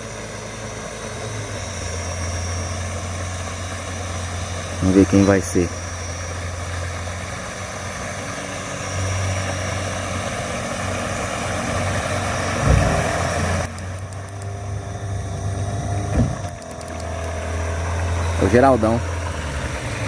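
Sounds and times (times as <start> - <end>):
boat motor humming: 0.0 - 20.0
low thump: 12.6 - 13.2, 16.1 - 16.5.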